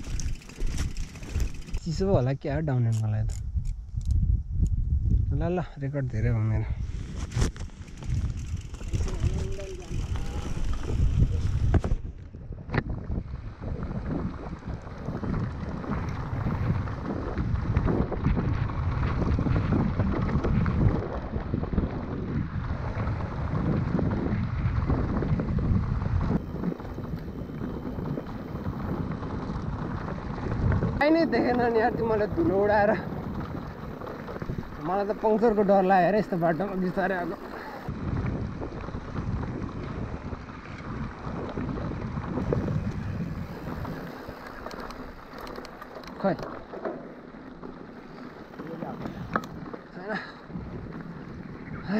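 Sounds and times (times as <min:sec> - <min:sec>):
bike rattling on gravel: 0:00.0 - 0:03.4, 0:06.2 - 0:51.9
wind buffeting microphone: 0:00.0 - 0:51.9.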